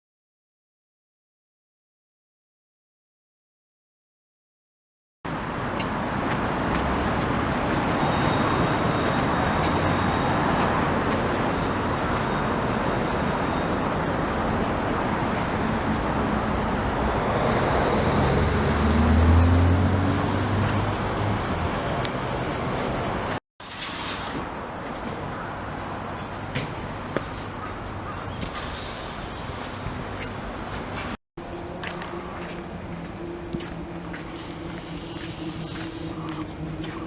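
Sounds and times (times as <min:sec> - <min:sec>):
road traffic noise: 0:05.3 - 0:37.0
vehicle passing close: 0:06.0 - 0:23.4.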